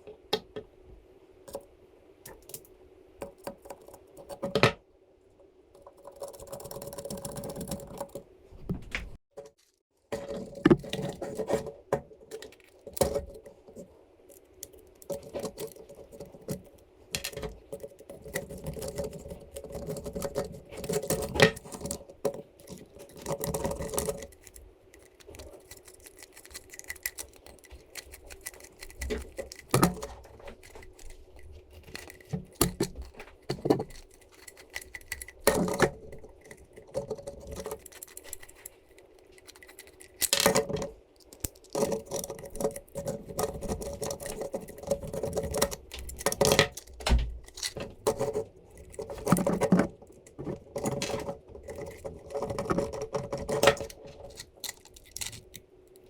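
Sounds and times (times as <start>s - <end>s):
scraping or rustling: 6.1s - 56.0s
plastic pieces clicking and rattling: 14.3s - 56.0s.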